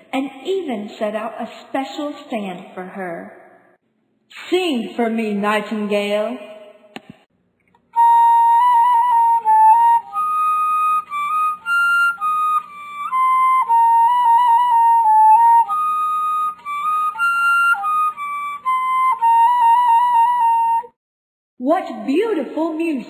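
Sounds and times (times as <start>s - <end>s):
flute-like solo melody: 8.0s - 21.0s.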